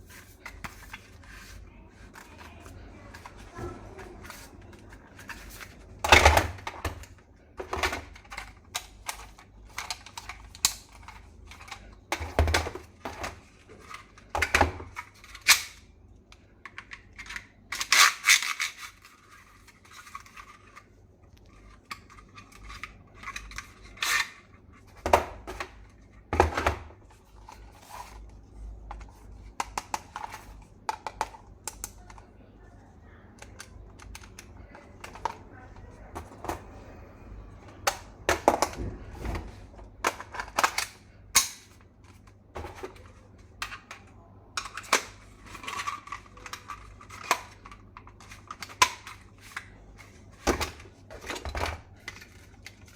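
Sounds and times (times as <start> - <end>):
hard plastic parts rattling: 0.3 - 15.8.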